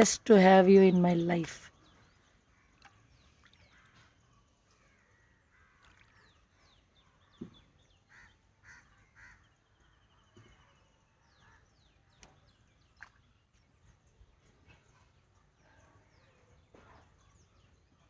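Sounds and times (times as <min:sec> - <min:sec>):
small birds twittering: 0:01.0 - 0:18.0
crow cawing: 0:08.1 - 0:09.4.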